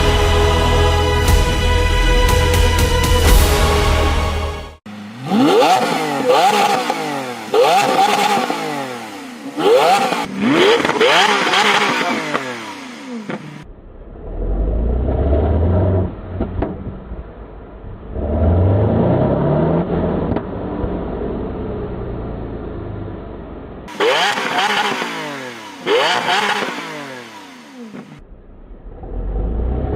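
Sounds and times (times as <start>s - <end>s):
car engine revving: 3.1s - 29.9s
sports car engine running: 4.9s - 18.2s
exhaust pops: 16.3s - 17.2s.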